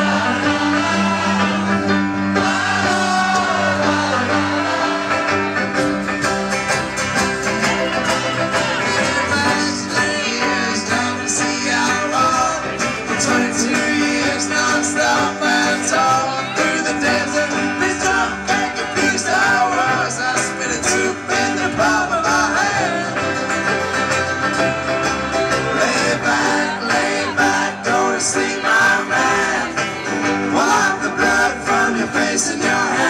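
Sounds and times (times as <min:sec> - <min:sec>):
plucked banjo: 0:00.0 - 0:33.0
strummed guitar: 0:00.0 - 0:33.0
person singing: 0:07.6 - 0:23.7, 0:25.7 - 0:33.0.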